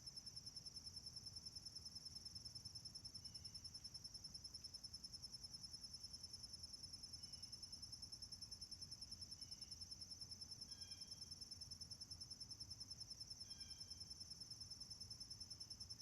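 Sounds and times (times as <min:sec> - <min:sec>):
insects chirring: 0:09.1 - 0:11.6, 0:12.9 - 0:14.8.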